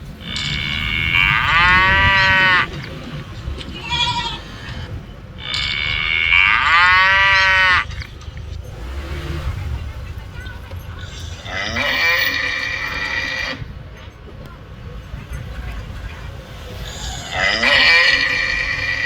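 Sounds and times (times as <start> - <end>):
cow mooing: 0.2 - 8.1, 11.0 - 13.7, 17.2 - 19.0.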